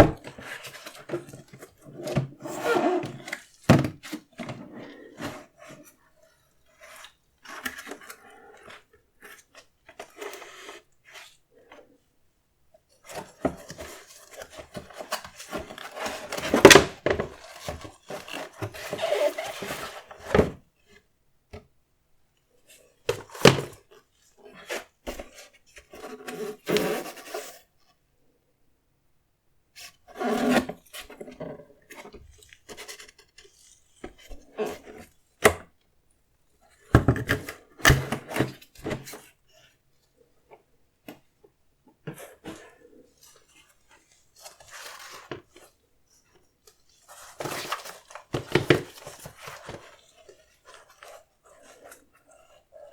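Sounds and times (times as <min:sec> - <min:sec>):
rustling of box and packaging: 0:00.0 - 0:12.0, 0:12.9 - 0:21.1, 0:22.7 - 0:27.8, 0:36.6 - 0:39.8, 0:40.4 - 0:52.9.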